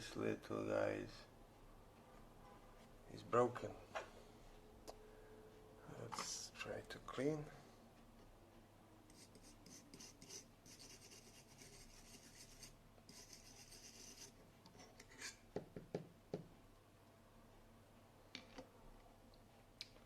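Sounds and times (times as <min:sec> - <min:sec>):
faint scrubbing on circuit board: 0:09.1 - 0:15.4.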